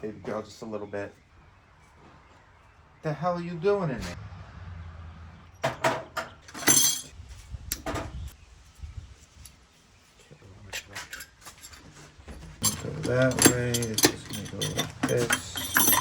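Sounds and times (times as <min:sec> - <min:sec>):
metal parts and tools clinking: 0:06.4 - 0:07.2, 0:10.8 - 0:16.0.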